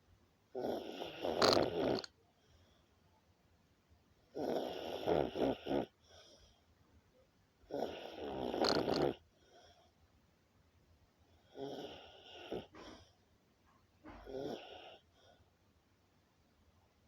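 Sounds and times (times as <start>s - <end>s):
person snoring: 0.6s - 2.1s, 4.4s - 5.9s, 7.7s - 9.2s
faint breathing: 1.4s - 3.1s, 5.9s - 6.8s.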